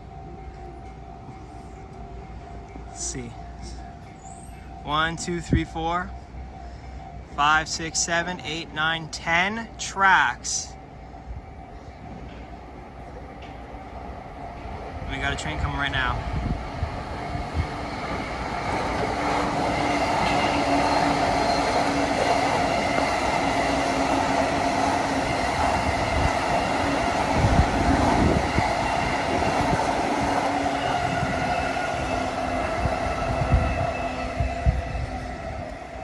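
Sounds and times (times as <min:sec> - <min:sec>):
train wheels running over rails: 0:11.9 - 0:36.0.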